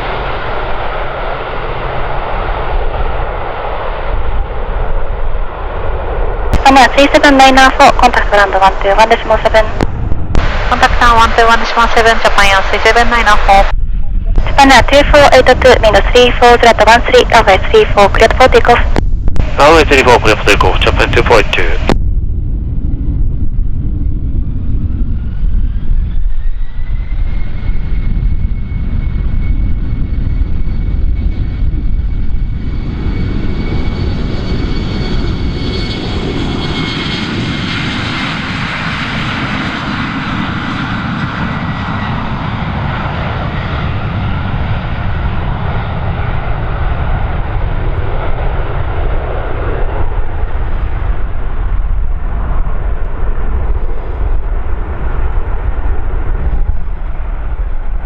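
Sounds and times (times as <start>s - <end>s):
jet engine whine and roar: 0.0s - 58.0s.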